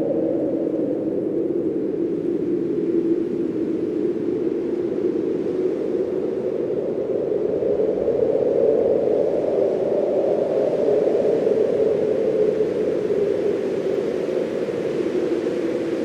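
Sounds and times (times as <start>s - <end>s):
blizzard wind blowing: 0.0s - 16.0s.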